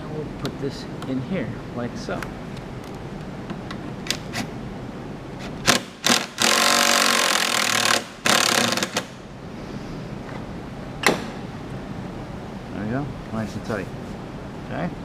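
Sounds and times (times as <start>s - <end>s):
power driver whirring: 5.6s - 9.1s.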